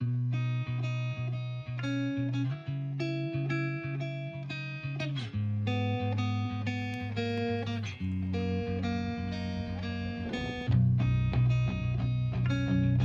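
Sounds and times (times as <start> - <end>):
plucked guitar melody: 0.0 - 13.0
bass line: 7.4 - 13.0.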